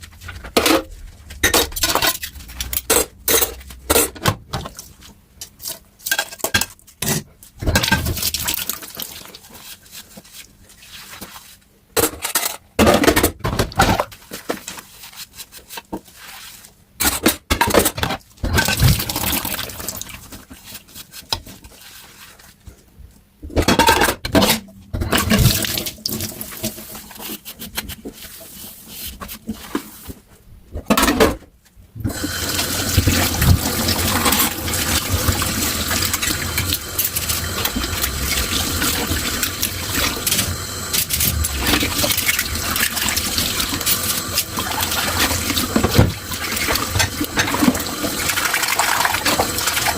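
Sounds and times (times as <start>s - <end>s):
water splashing in sink: 7.7s - 9.4s, 18.5s - 20.3s, 25.1s - 27.0s, 32.1s - 49.9s
tap running: 32.1s - 49.9s.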